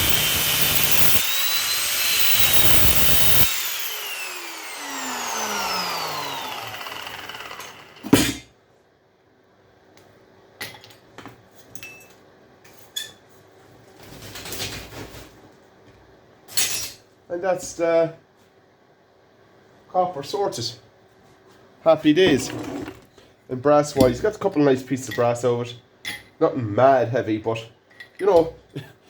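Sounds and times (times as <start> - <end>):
power tool whining: 0.0 - 8.2.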